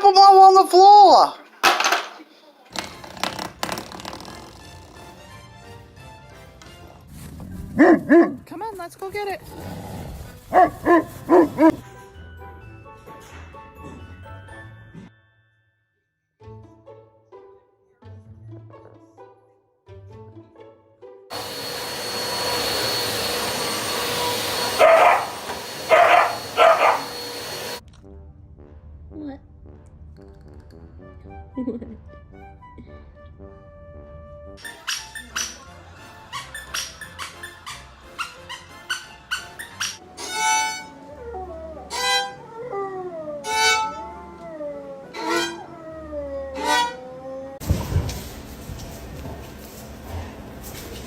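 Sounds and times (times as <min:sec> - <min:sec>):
dog barking: 0:07.8 - 0:08.5, 0:10.5 - 0:11.8, 0:24.7 - 0:27.8
motor whir with high whine: 0:21.3 - 0:27.8
sliding violin-like notes: 0:40.0 - 0:47.6.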